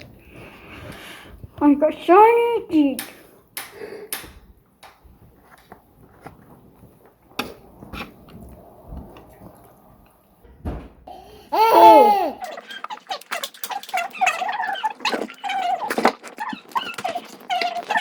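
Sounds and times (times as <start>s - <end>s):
food and packaging rustling: 4.6s - 10.1s, 11.8s - 18.0s
chewing: 12.4s - 18.0s.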